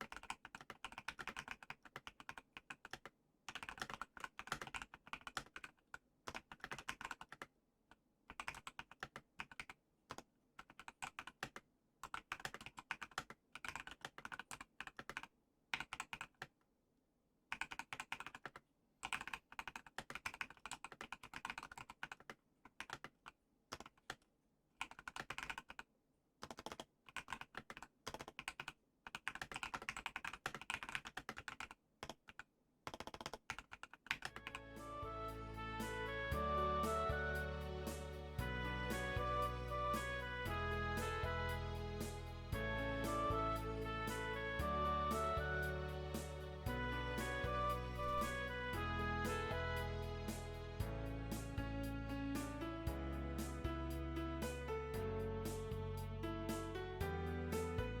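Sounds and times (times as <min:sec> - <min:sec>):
mechanical keyboard keystroke clacks: 0:00.0 - 0:07.5, 0:08.3 - 0:16.5, 0:24.8 - 0:25.8, 0:26.4 - 0:34.5.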